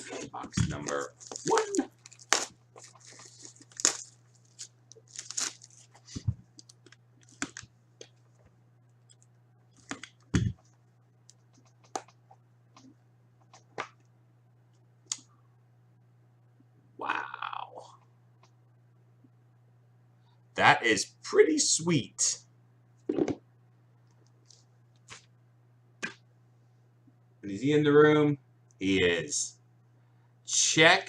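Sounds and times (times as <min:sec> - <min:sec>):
cardboard and wrapper rustling: 0:00.0 - 0:07.6
faint low hum: 0:00.0 - 0:31.0.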